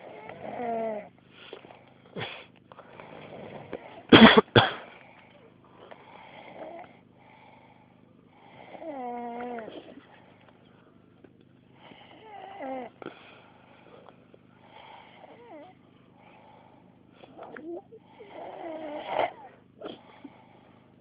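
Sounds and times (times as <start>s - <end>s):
man snoring: 0.0s - 1.1s, 2.2s - 4.1s, 5.9s - 9.9s, 11.8s - 13.3s, 14.6s - 16.7s, 17.4s - 20.6s.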